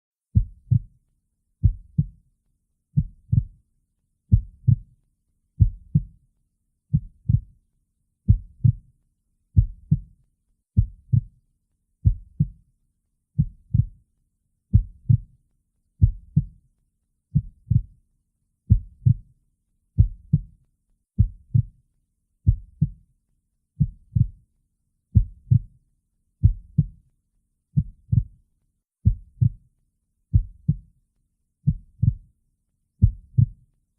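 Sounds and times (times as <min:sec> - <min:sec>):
slow heartbeat thumps: 0:00.4 - 0:00.9, 0:01.6 - 0:02.1, 0:03.0 - 0:03.5, 0:04.3 - 0:04.8, 0:05.6 - 0:06.1, 0:08.3 - 0:08.8, 0:10.8 - 0:11.3, 0:13.4 - 0:13.9, 0:17.4 - 0:17.9, 0:18.7 - 0:19.2, 0:20.0 - 0:20.5, 0:23.8 - 0:24.4, 0:25.2 - 0:25.7, 0:26.4 - 0:26.9, 0:29.0 - 0:29.6, 0:30.3 - 0:30.8, 0:31.7 - 0:32.2, 0:33.0 - 0:33.6.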